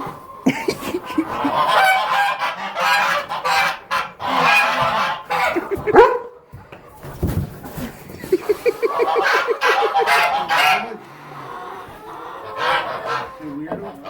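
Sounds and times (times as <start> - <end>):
fowl honking calls: 0.8 - 6.1, 8.3 - 14.0.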